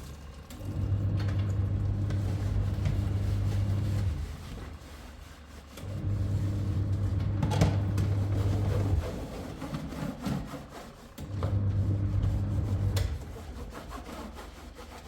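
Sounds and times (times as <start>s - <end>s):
scraping and rubbing: 2.1s - 15.0s.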